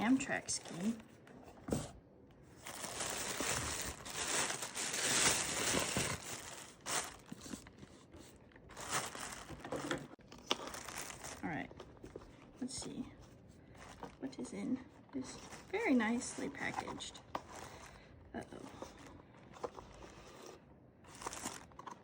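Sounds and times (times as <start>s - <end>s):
packing material crinkling: 2.6s - 12.1s, 21.1s - 22.0s.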